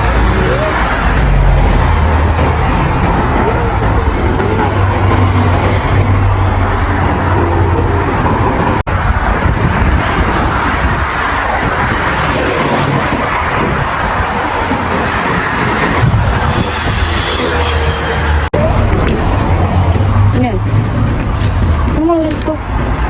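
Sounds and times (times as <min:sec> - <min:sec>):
road traffic with engine hum: 0:00.0 - 0:23.0.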